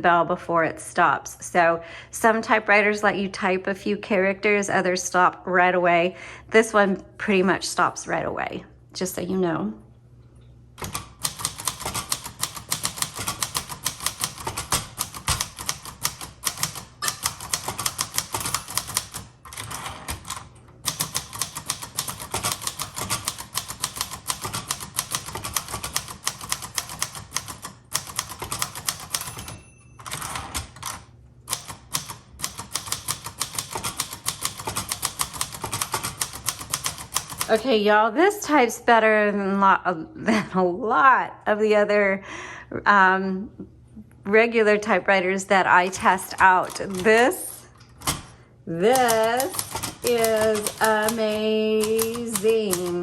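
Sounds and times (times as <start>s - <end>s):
typewriter keys typing fast: 10.8s - 37.6s, 45.9s - 47.3s, 48.0s - 53.0s.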